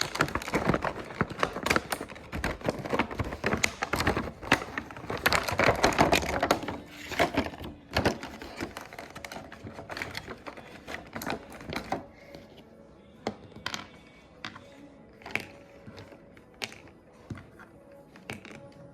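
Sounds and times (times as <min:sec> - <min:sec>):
packaging rustling: 0:00.0 - 0:12.4.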